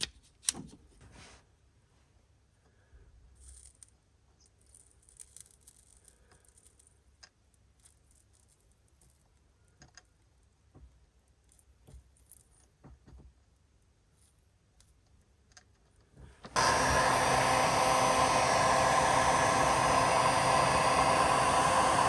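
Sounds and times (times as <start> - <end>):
small clicks and taps: 6.3 - 13.3.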